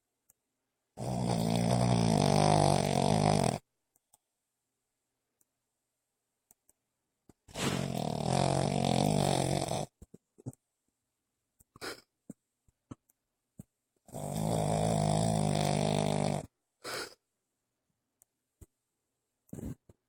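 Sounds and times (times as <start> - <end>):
puppy snoring: 1.0 - 3.6, 7.5 - 10.0, 14.1 - 17.2
quiet breath sounds: 11.6 - 14.4, 16.1 - 17.3.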